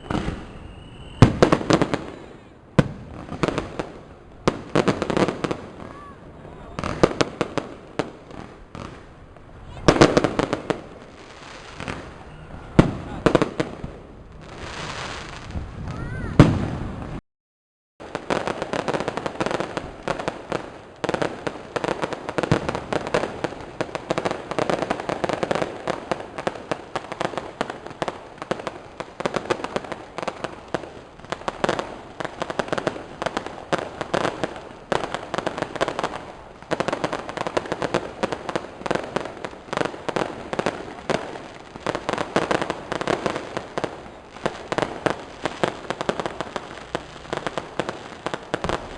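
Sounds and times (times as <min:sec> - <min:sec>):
firework bang: 0:00.0 - 0:17.2
fireworks crackling: 0:00.0 - 0:17.2, 0:18.0 - 0:48.9.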